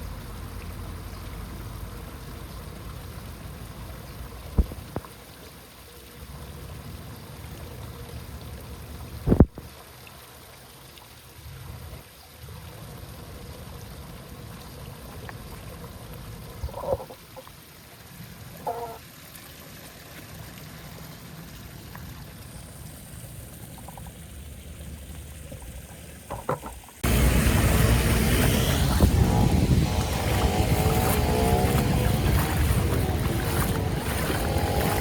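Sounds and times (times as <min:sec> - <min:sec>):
water trickling and pouring: 0:00.0 - 0:35.0
loud rushing noise: 0:27.0 - 0:35.0.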